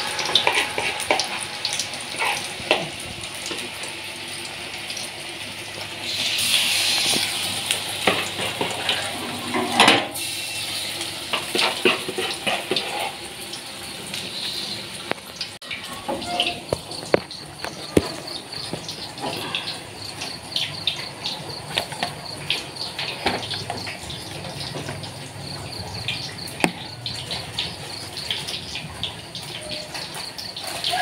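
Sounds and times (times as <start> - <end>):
loud hiss: 6.0 - 7.6.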